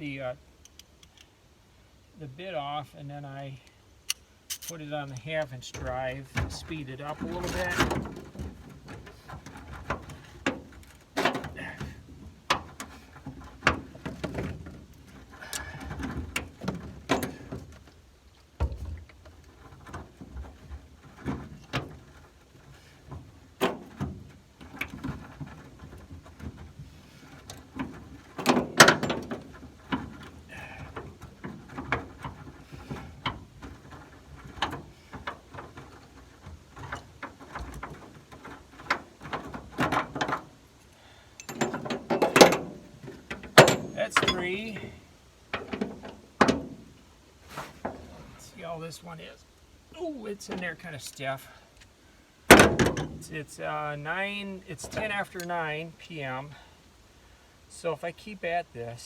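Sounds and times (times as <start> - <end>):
hand tool metal clicks and knocks: 0.6 - 1.3, 4.0 - 11.9, 27.4 - 40.6, 41.4 - 46.8.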